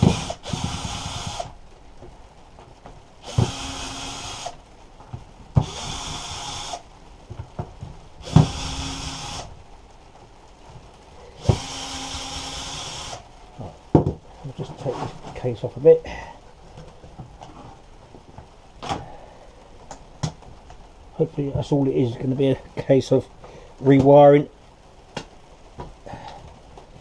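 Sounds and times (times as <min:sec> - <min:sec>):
electric screwdriver spinning: 0:00.0 - 0:01.6, 0:03.2 - 0:04.6, 0:11.4 - 0:13.2.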